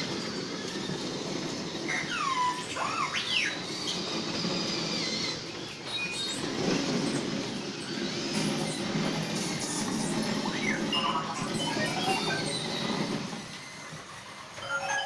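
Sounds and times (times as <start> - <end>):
droid beeps and whistles: 10.4 - 12.6.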